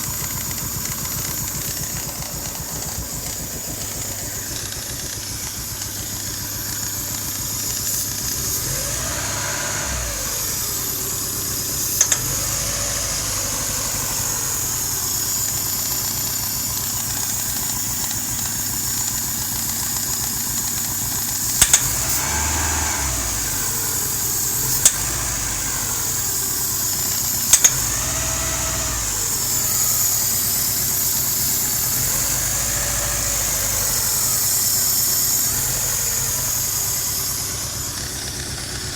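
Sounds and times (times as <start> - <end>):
sharp clicks: 0.0 - 8.8, 11.6 - 12.6, 21.5 - 30.1
car engine idling: 0.0 - 38.9.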